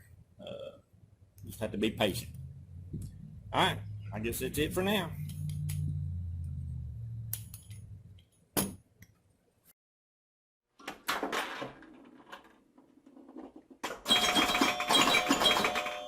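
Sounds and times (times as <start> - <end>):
low hum: 1.4 - 8.2.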